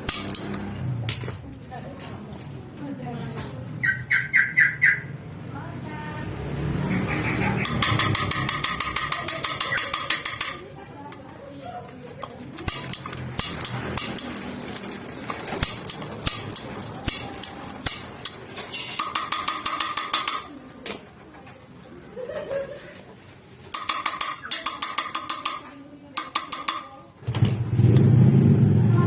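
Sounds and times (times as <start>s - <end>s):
metallic clicks and taps of tools: 0.0s - 1.4s, 7.6s - 11.3s, 11.9s - 21.1s, 23.7s - 28.1s.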